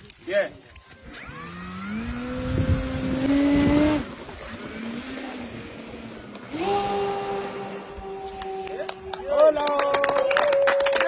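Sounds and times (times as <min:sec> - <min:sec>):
model aeroplane engine buzzing: 0:00.7 - 0:09.1.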